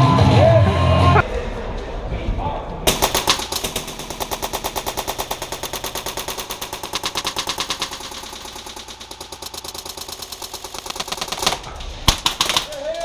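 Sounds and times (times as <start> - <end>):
airsoft rifle full-auto firing: 2.9 - 13.0.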